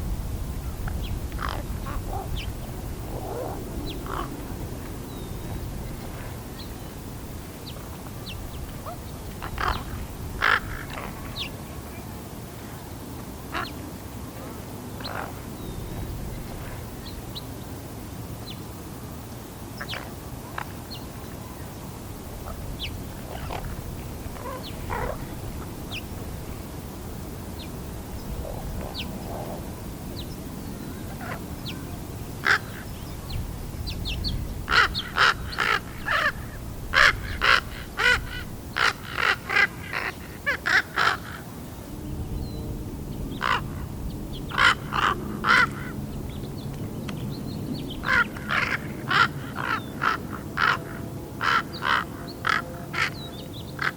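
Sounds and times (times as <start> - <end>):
young raven calling: 3.2 - 4.6, 8.8 - 11.5, 24.4 - 25.3, 32.4 - 32.9, 34.6 - 41.4, 43.4 - 43.9, 44.5 - 46.0, 48.0 - 53.2.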